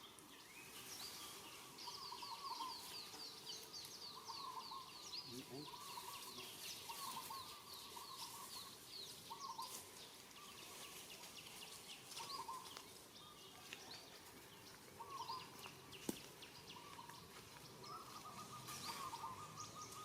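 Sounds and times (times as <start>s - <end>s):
high bird chirps: 16.5s - 20.0s
lower bird call: 17.8s - 20.0s.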